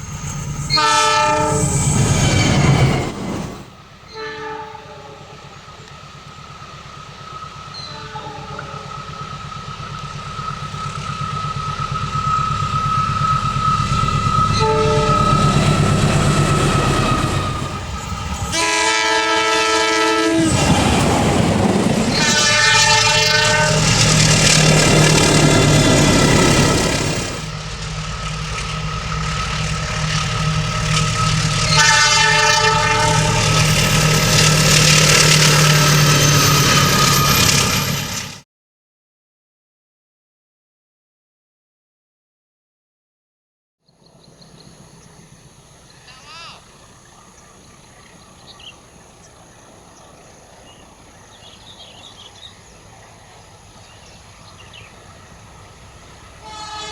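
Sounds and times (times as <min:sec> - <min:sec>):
locomotive engine rumbling: 0:00.0 - 0:38.4, 0:44.2 - 0:56.9
train horn: 0:00.6 - 0:03.1, 0:04.0 - 0:05.6, 0:07.7 - 0:09.3, 0:10.5 - 0:21.0, 0:22.0 - 0:27.5, 0:28.5 - 0:37.9, 0:56.3 - 0:56.9
wheels and carriages rolling: 0:23.6 - 0:31.8.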